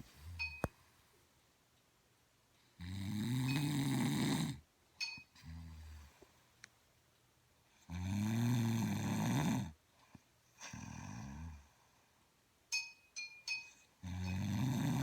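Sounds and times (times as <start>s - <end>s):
woman snoring heavily: 2.8s - 4.6s, 7.9s - 9.7s, 10.6s - 11.6s, 14.0s - 15.0s.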